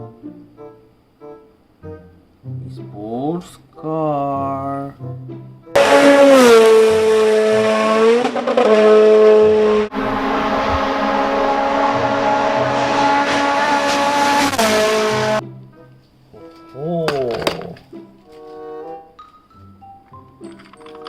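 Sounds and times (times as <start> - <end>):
racing car engine: 5.8 - 15.4.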